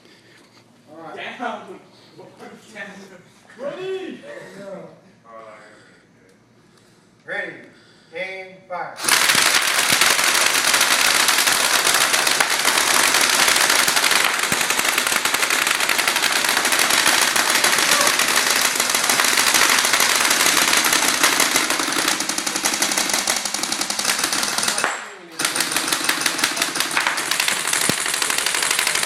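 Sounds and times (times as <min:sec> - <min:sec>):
airsoft guns firing full auto: 0:09.0 - 0:29.0.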